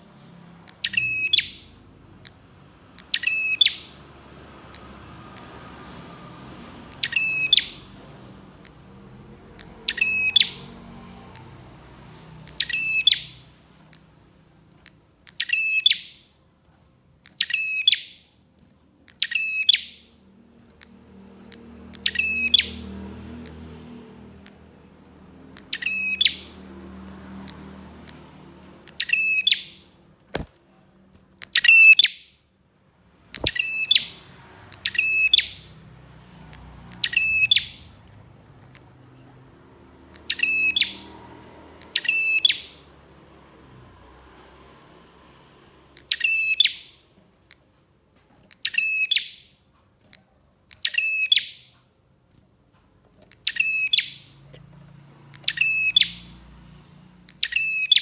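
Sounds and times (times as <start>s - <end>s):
sharp clicks: 0.4s - 32.4s, 33.1s - 47.8s
songbird trilled call: 0.7s - 2.4s, 3.0s - 4.0s, 6.9s - 7.9s, 9.6s - 10.7s, 12.4s - 13.4s, 15.3s - 16.3s, 19.1s - 20.1s, 21.9s - 23.5s, 25.6s - 26.6s, 36.9s - 37.9s, 40.1s - 41.1s, 41.8s - 42.8s, 46.0s - 47.0s, 53.4s - 54.4s, 55.3s - 56.3s, 57.3s - 58.0s.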